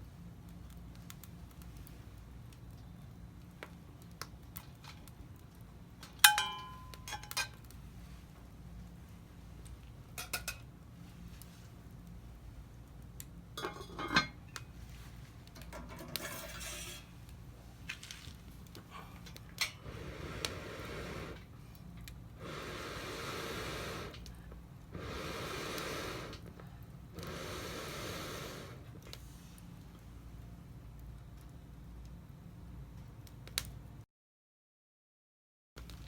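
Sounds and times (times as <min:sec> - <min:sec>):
utensils clinking against a dish: 0:13.6 - 0:14.4, 0:15.8 - 0:17.1
rushes of hissing noise: 0:18.9 - 0:21.6, 0:22.3 - 0:29.6.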